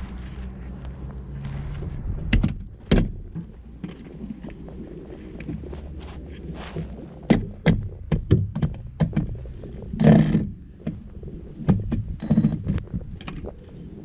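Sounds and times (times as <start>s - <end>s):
objects knocking and clanking: 7.2s - 11.0s.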